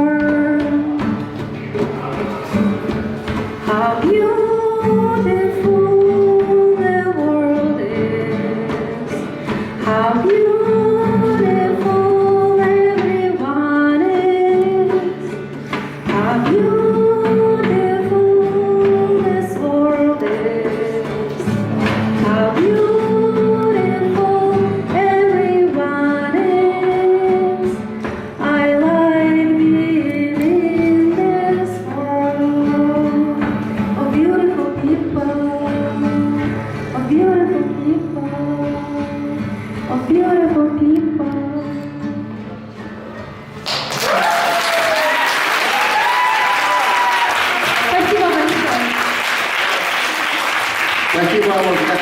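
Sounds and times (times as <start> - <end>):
woman singing slow song: 0.0 - 1.2, 3.6 - 42.5
instrumental accompaniment: 0.0 - 52.0.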